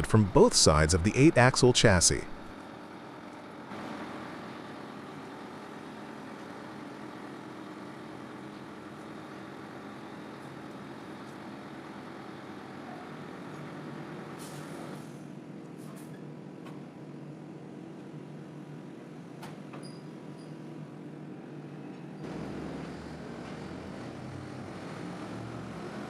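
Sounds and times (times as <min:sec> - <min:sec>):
diesel engine running: 0:00.0 - 0:14.5, 0:22.2 - 0:26.0.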